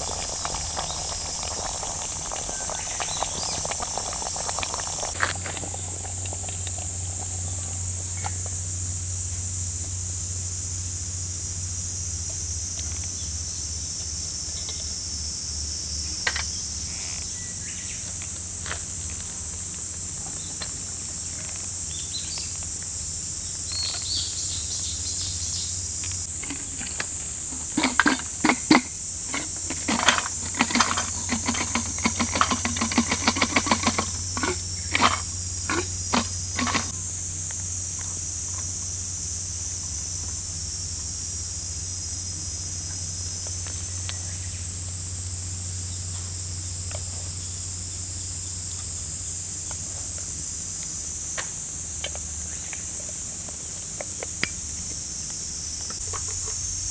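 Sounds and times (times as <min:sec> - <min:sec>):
insect chorus buzzing: 0:00.0 - 0:20.0, 0:20.8 - 0:46.0
sharp clicks and knocks: 0:26.3 - 0:37.0.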